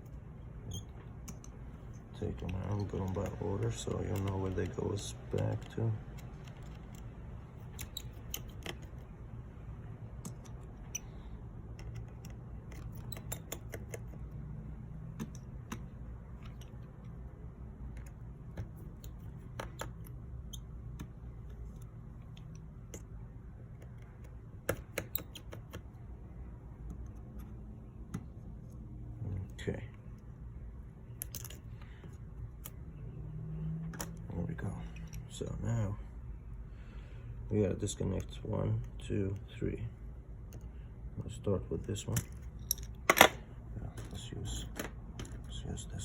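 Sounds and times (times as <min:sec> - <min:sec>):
steady low hum: 0:00.0 - 0:46.0
small screw clicks: 0:00.7 - 0:09.0, 0:10.1 - 0:14.3, 0:23.8 - 0:25.9.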